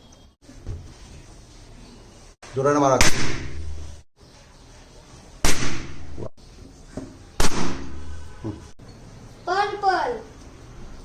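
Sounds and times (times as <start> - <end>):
balloons bursting: 3.0 - 3.9, 5.4 - 6.3, 7.4 - 8.3.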